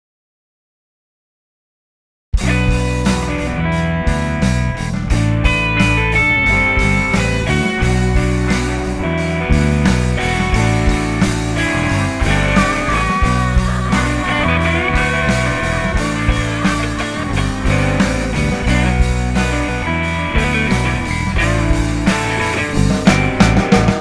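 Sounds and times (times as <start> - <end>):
rock band playing: 2.4 - 24.0.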